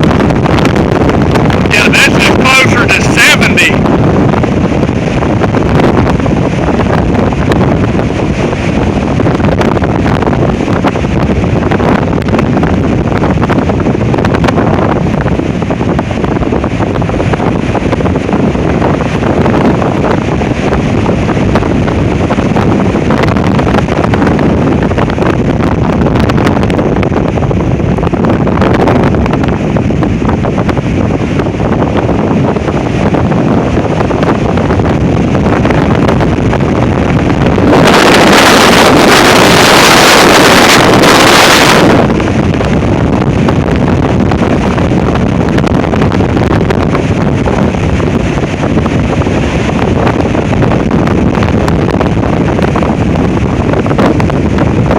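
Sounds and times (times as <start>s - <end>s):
strong wind buffeting microphone: 0.0s - 54.9s.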